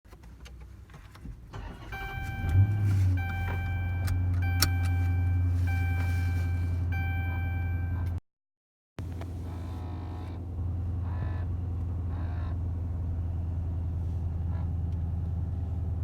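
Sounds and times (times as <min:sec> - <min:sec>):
car engine starting and idling: 0:00.6 - 0:08.2.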